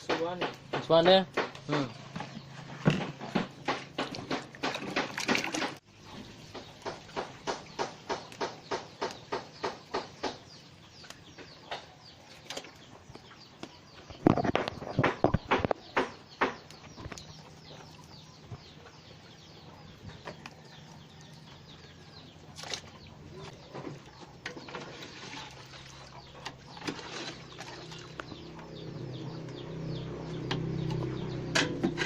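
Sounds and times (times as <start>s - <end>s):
sharp knocks: 0.0s - 1.9s, 2.8s - 5.8s, 14.3s - 16.6s
birds chirping: 0.0s - 32.0s.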